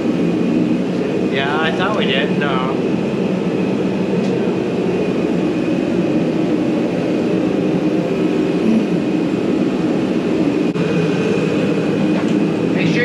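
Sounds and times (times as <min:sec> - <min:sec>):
mechanical drone: 0:00.0 - 0:13.0.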